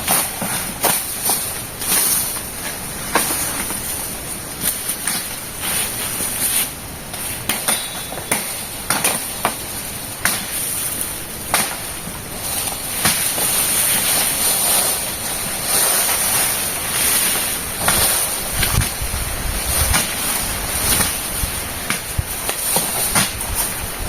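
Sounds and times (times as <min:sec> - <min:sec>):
steady high hiss: 0:00.0 - 0:24.0
machete chopping stems: 0:10.2 - 0:11.9, 0:19.8 - 0:23.8.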